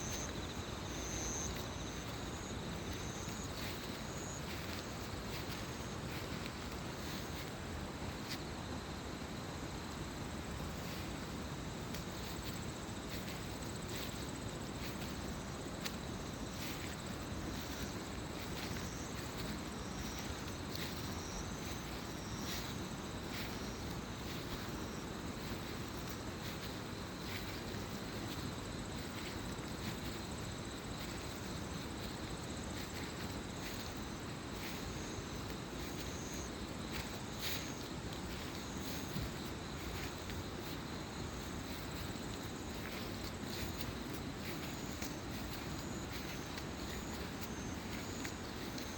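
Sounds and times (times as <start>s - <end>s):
crickets chirping: 0.0s - 48.9s.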